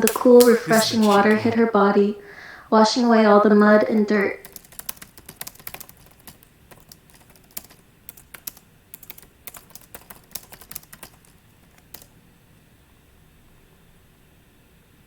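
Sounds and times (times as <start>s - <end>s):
typing on computer keyboard: 4.4s - 12.1s.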